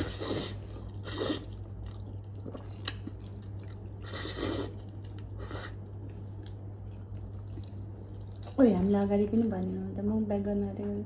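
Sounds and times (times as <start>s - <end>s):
person chewing noodles: 0.0s - 8.6s
steady low hum: 0.0s - 11.0s.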